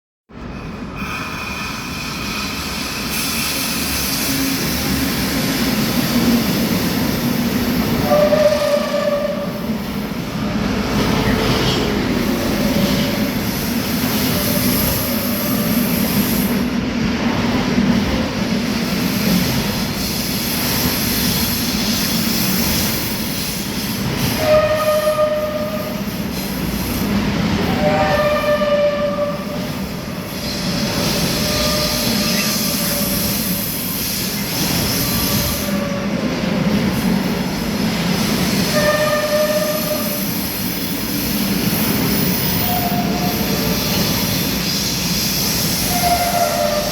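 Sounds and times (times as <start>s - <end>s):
freight train rolling rumble: 0.3s - 46.9s
train wheels squealing: 0.5s - 5.6s, 11.2s - 16.5s, 30.2s - 36.1s, 38.6s - 46.9s.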